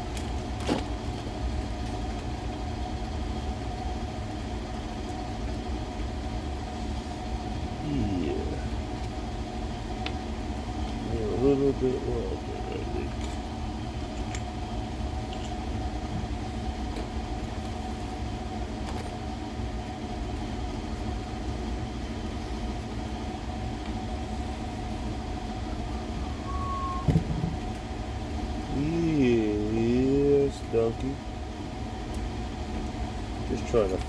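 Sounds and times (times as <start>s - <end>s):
steady mechanical hum: 0.0s - 34.0s
knock: 27.0s - 27.6s.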